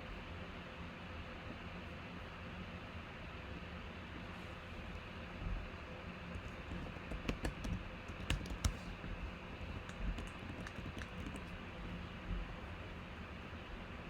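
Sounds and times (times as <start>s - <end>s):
keyboard key clicks: 6.9s - 8.9s, 9.8s - 11.5s.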